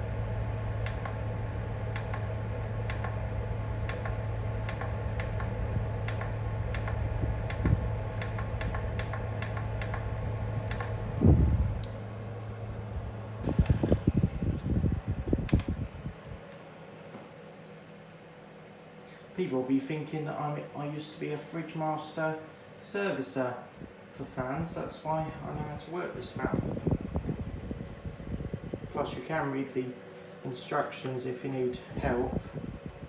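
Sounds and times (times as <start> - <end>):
fan humming: 0.0 - 33.0
timer control clicking: 0.8 - 1.2, 1.9 - 3.2, 3.8 - 11.0.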